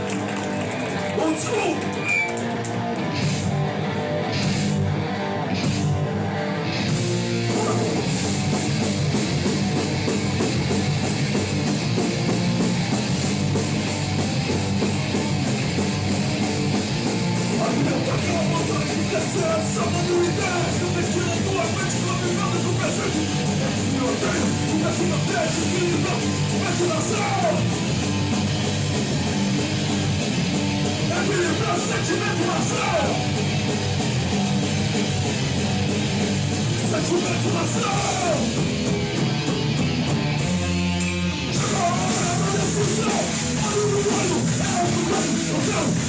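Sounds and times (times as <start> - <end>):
punk band playing live: 0.0 - 46.0
person yelling vocals: 24.0 - 27.7, 37.0 - 38.5.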